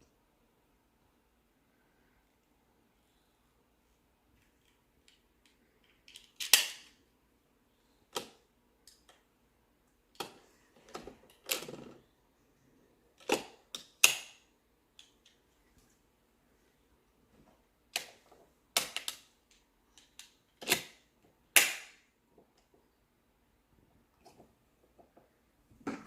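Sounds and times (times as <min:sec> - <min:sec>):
plastic tiles clacking together: 0:04.6 - 0:06.9.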